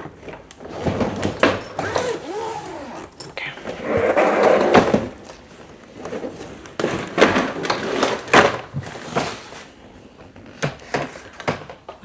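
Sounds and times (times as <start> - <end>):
rustling: 1.5 - 3.4.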